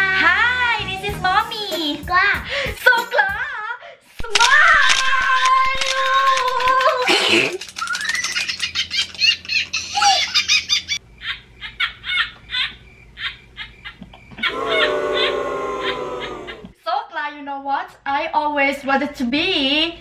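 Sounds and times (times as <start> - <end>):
person laughing: 13.9 - 16.7.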